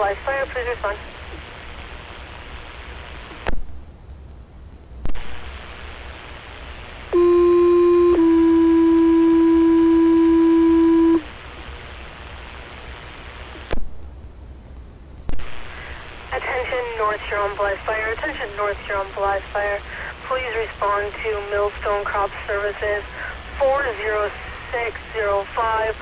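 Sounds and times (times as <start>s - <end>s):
two-tone paging tones: 7.2s - 11.2s.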